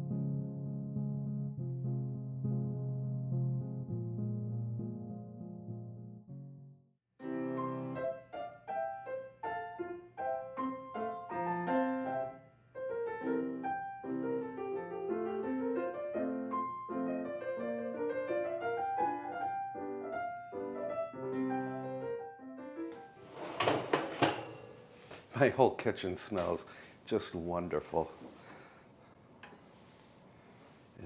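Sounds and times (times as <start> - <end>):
solo piano music: 0.0 - 23.2.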